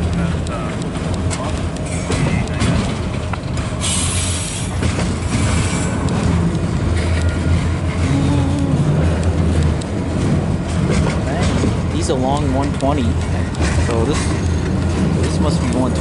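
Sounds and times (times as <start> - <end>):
hissing wheel and rail noise: 0.0 - 16.0
train wheels rumbling on rails: 0.0 - 16.0.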